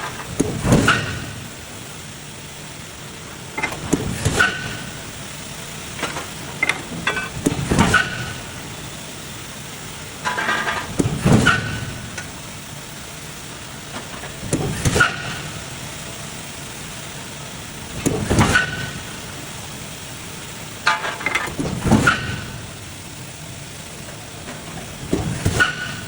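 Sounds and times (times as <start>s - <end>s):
steady machine hum: 0.0s - 26.0s.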